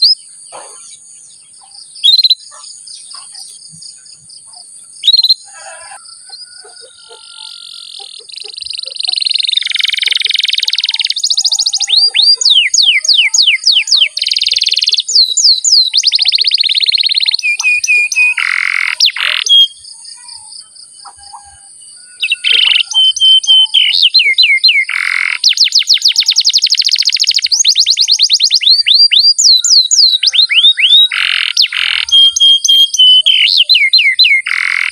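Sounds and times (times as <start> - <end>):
canary singing: 0.0 - 34.9.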